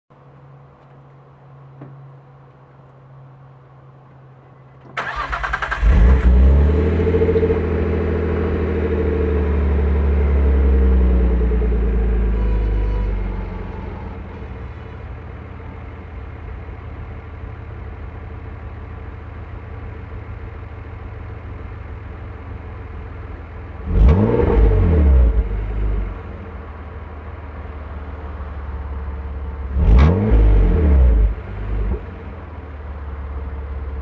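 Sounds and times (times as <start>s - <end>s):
car engine idling: 0.2s - 34.0s
engine revving: 5.0s - 14.8s, 23.8s - 26.5s, 29.6s - 32.4s.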